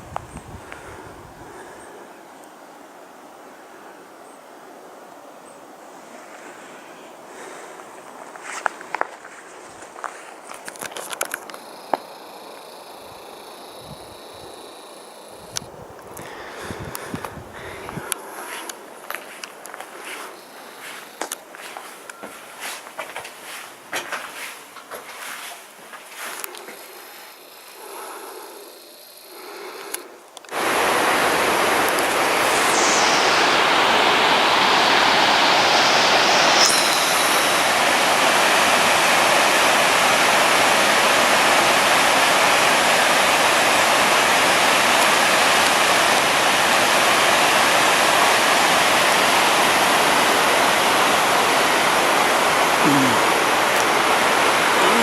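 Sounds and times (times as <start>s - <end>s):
waterfall rushing: 30.5s - 55.0s.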